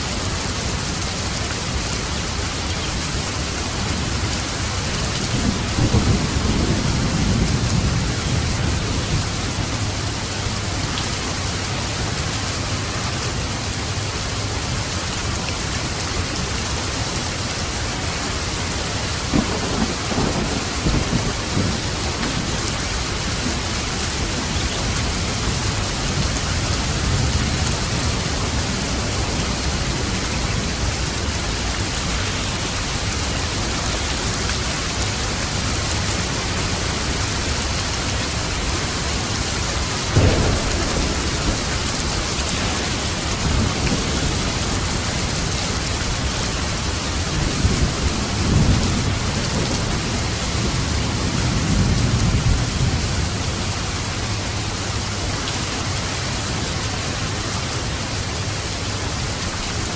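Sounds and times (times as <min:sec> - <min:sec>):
steady rain: 0:00.0 - 0:59.9
thunder clap and rumbles: 0:03.8 - 0:11.4, 0:19.1 - 0:55.1.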